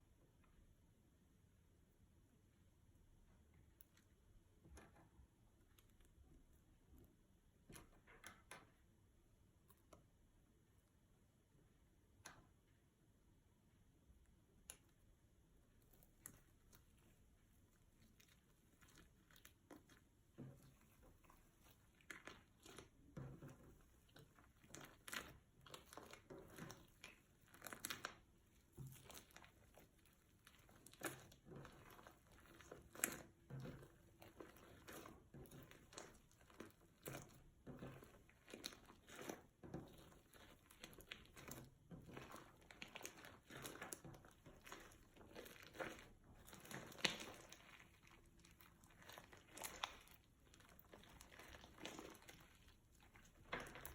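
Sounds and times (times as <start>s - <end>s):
hands squishing slime: 14.1s - 53.9s.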